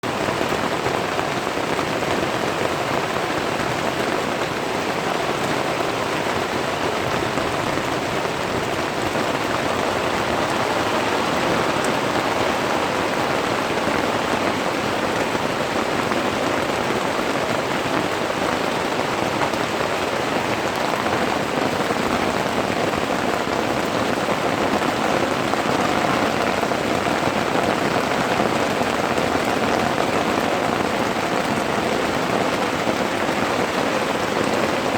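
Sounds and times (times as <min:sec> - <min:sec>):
heavy rain: 0:00.0 - 0:34.9.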